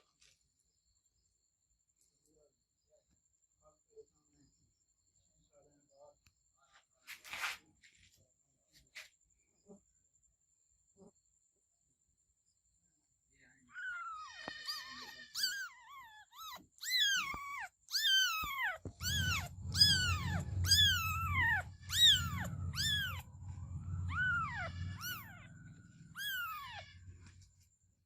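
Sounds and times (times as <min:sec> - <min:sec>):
kitten meowing: 0:13.7 - 0:27.4
low rumble: 0:18.8 - 0:27.6.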